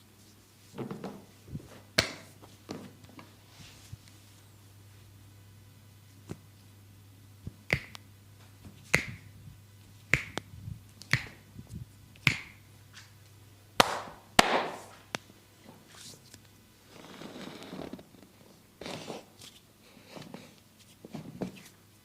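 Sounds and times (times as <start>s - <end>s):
hand slaps on skin: 7.7s - 8.0s, 8.9s - 9.2s, 10.1s - 10.5s, 11.1s - 11.4s, 12.2s - 12.6s, 13.8s - 15.0s.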